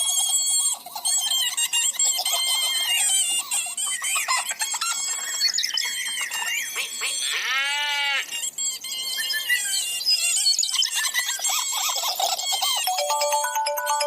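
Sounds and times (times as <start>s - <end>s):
high chirping warbling tones: 12.9s - 14.0s.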